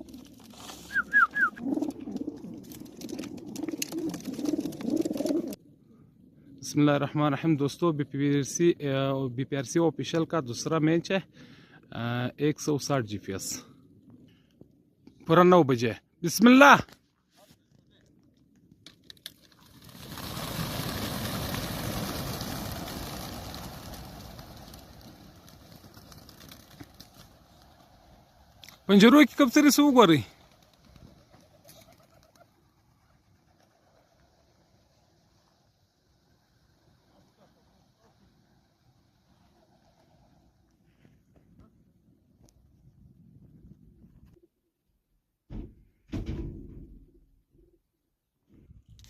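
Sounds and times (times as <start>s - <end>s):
pigeon flock wingbeats: 0.0s - 5.6s, 19.1s - 41.6s
pigeons cooing: 0.0s - 5.6s, 30.5s - 33.1s
quick falling chirps: 0.6s - 1.6s.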